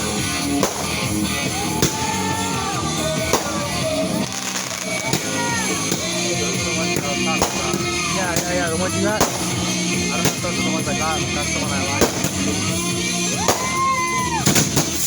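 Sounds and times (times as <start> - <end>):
fireworks bangs: 0.0 - 15.0
loud rock music with singing: 0.0 - 15.0.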